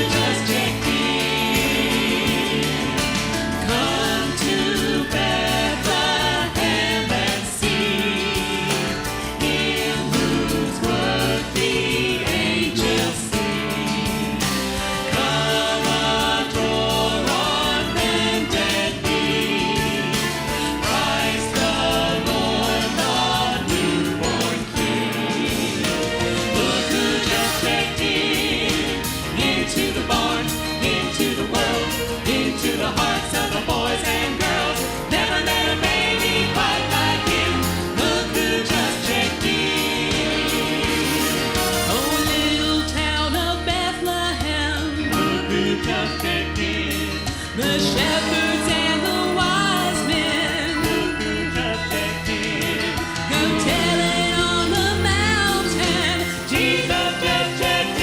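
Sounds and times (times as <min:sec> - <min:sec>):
gospel group singing in harmony: 0:00.0 - 0:58.0
instrumental accompaniment with beat: 0:00.0 - 0:58.0
person singing: 0:41.8 - 0:58.0.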